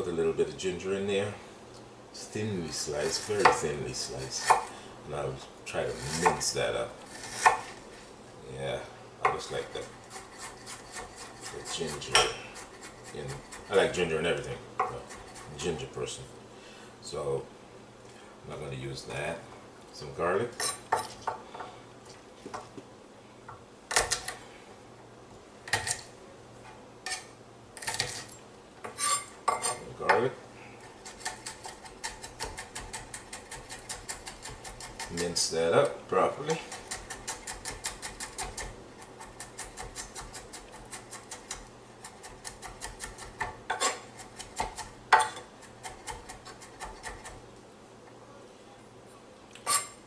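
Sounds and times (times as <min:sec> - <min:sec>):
knife chopping on cutting board: 0:03.4 - 0:03.6, 0:04.4 - 0:04.7, 0:06.0 - 0:06.4, 0:07.2 - 0:07.7.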